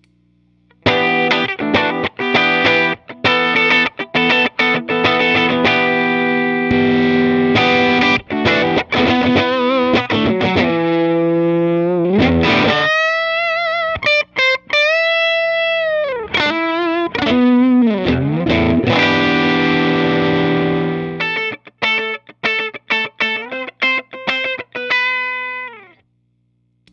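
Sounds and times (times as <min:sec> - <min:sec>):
overdriven electric guitar: 0:00.8 - 0:26.0.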